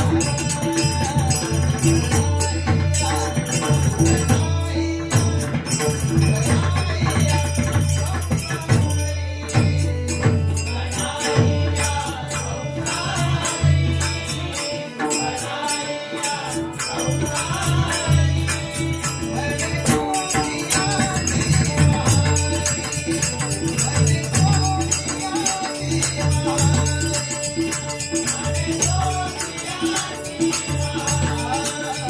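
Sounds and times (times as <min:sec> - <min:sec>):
hand cymbals clashing: 0:00.0 - 0:32.0
group chanting: 0:10.6 - 0:32.0.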